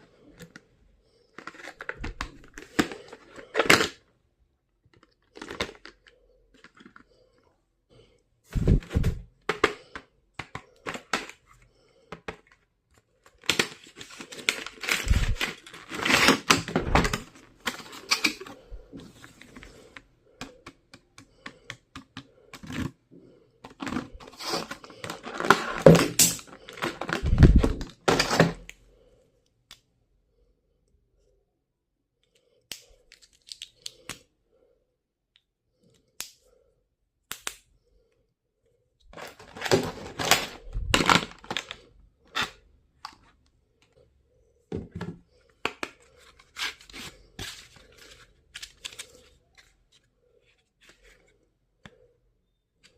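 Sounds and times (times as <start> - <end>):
packaging rustling and tearing: 1.4 - 4.0, 5.0 - 7.0, 13.2 - 19.6, 23.7 - 28.6, 39.1 - 42.6, 46.0 - 50.0
items clicking and knocking: 4.9 - 7.2, 8.6 - 23.0, 23.6 - 28.7, 39.1 - 43.4.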